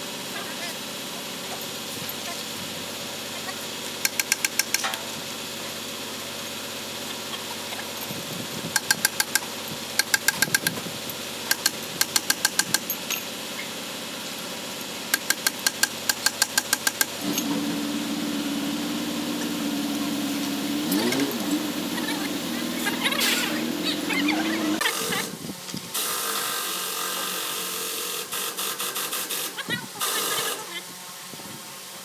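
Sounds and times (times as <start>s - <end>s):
rapid metallic clicking: 4.0s - 5.0s, 8.7s - 13.2s, 14.8s - 17.5s.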